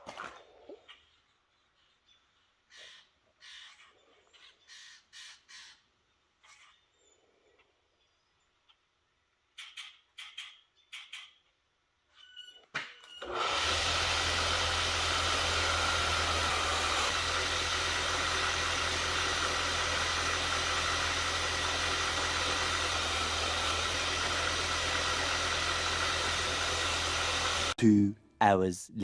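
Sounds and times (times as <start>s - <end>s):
short squeaks: 12.1s - 13.3s
electric motor running: 13.2s - 27.8s.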